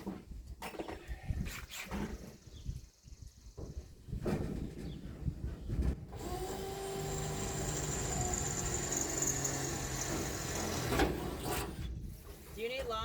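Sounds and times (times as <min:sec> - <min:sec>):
power drill running: 0:06.2 - 0:11.2.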